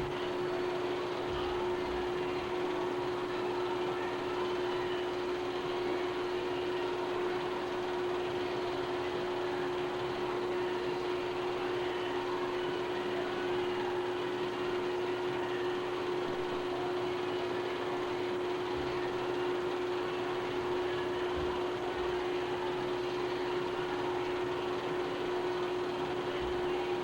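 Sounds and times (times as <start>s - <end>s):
machine hum and fan whir: 0.0s - 27.0s.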